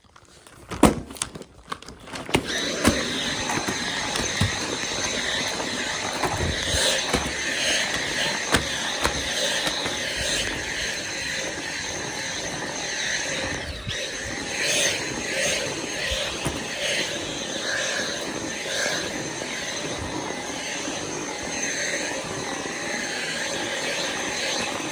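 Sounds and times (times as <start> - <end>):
vacuum cleaner motor whine: 0.0 - 24.9
handling clicks and knocks: 0.5 - 10.6.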